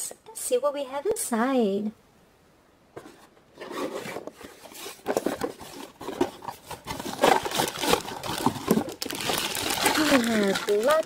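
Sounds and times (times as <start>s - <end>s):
box unpacking rustling: 3.0s - 11.0s.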